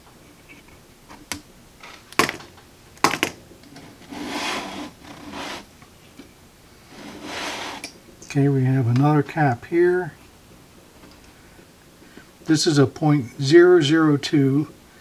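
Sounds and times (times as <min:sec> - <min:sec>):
rubbing and scraping: 0:03.1 - 0:05.8, 0:06.8 - 0:07.9.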